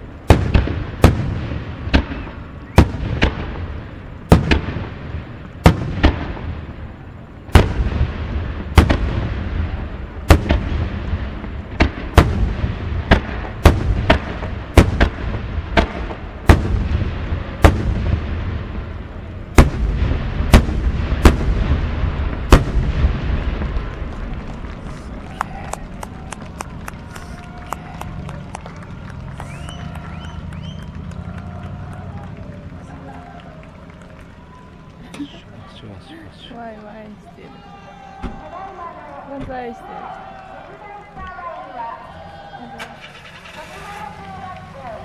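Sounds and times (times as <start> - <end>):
firework bursts booming: 0.0 - 32.4
low rumble and crackle: 0.0 - 45.0.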